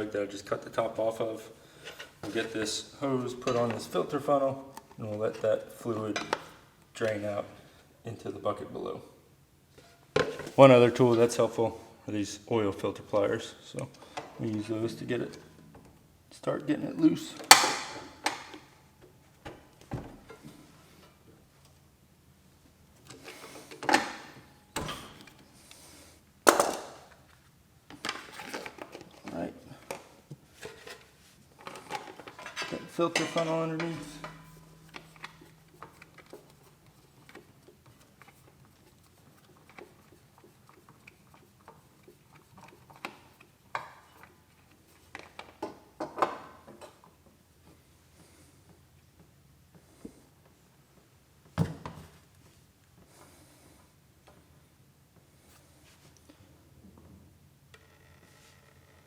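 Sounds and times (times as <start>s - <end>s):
metal scraping: 30.6s - 39.0s.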